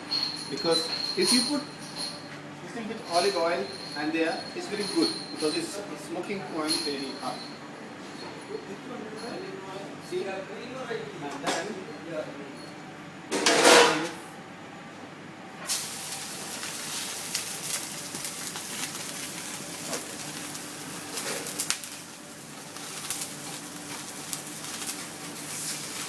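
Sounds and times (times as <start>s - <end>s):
meat sizzling in a pan: 15.7s - 26.0s.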